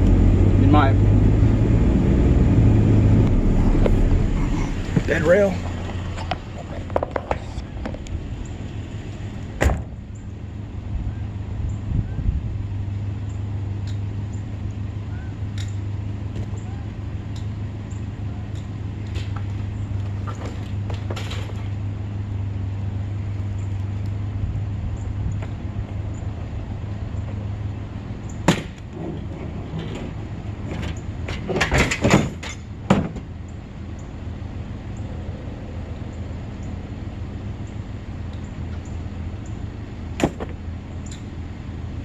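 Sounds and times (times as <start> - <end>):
truck engine idling: 0.0 - 42.0
sharp engine knocks: 9.6 - 10.0, 28.4 - 33.4, 40.1 - 40.6.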